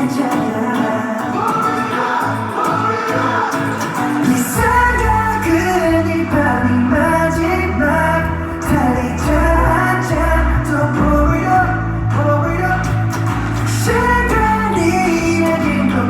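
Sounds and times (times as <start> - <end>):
loud pop song: 0.0 - 16.0
person singing: 0.0 - 16.0
heavy bass line: 4.6 - 16.0.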